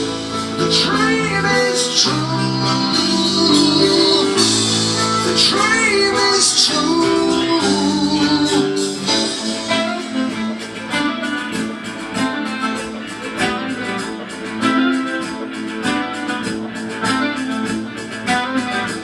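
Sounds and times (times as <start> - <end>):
guitar music: 0.0 - 19.0.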